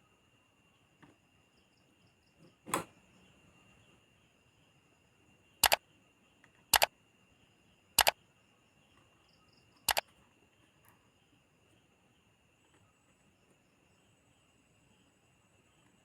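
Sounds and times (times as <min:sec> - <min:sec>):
sharp double clicks: 0:06.7 - 0:06.9.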